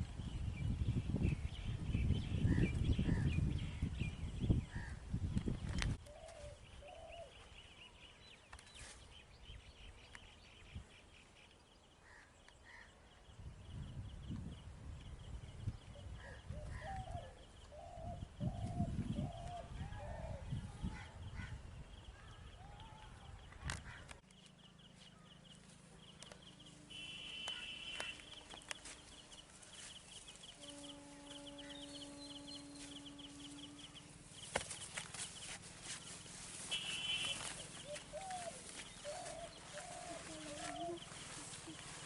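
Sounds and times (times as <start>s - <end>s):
wind buffeting microphone: 0.0s - 6.0s, 13.2s - 24.1s
steady humming tone: 25.0s - 42.0s
short bird calls: 26.4s - 35.6s, 36.6s - 42.0s.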